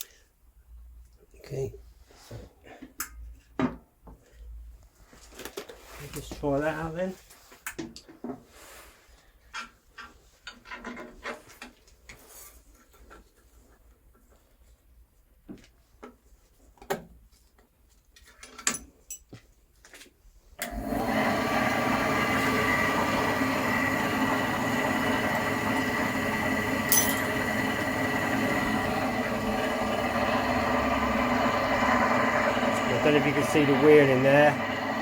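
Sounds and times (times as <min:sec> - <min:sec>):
bandsaw motor running: 0:20.6 - 0:35.0.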